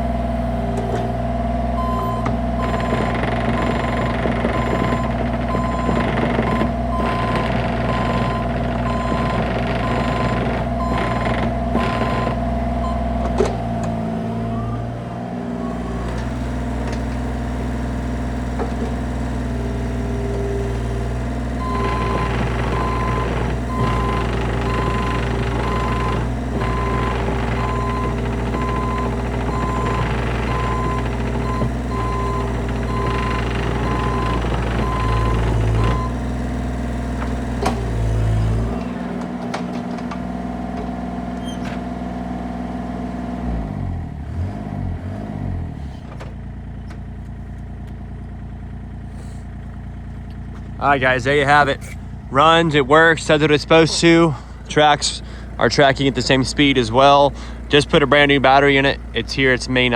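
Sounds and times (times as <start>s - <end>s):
excavator diesel engine running: 0.0s - 59.9s
travel alarm beeping: 1.8s - 13.2s, 21.6s - 36.2s.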